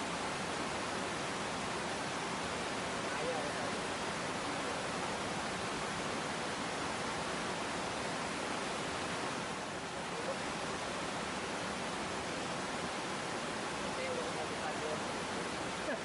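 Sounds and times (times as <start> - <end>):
river water rushing through dam: 0.0 - 16.0.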